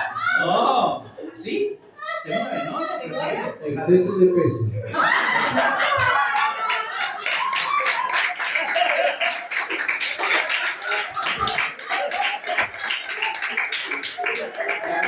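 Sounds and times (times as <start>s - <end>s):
audience clapping: 5.7s - 15.0s.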